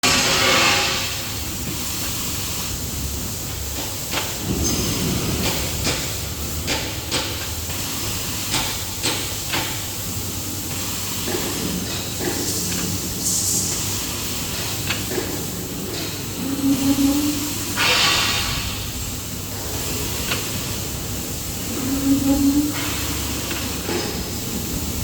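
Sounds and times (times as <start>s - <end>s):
cutting machine hissing: 14.3s - 25.0s.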